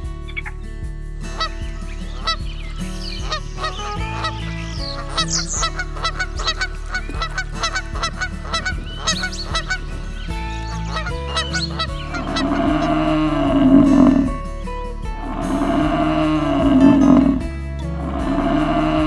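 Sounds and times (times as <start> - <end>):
background music: 0.0 - 19.0
waterfowl honking: 3.2 - 13.2.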